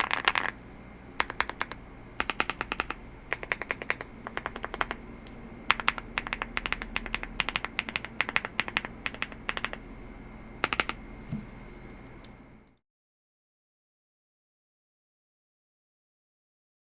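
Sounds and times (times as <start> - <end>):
mechanical keyboard typing: 0.0 - 0.6, 1.2 - 5.0, 5.7 - 9.8, 10.6 - 11.0.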